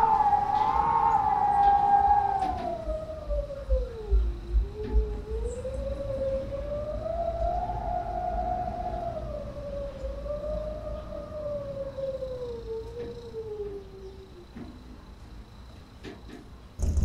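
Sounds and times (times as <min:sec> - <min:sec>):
low rumble of gusts: 0:00.0 - 0:14.2, 0:16.8 - 0:17.0
wind whistling through window gap: 0:00.0 - 0:17.0
buffeting thumps: 0:16.8 - 0:17.0.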